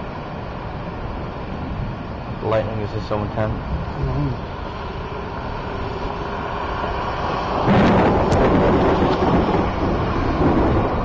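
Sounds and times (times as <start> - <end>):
steady rushing background: 0.0 - 11.0
thunder crack and rumble: 7.4 - 11.0.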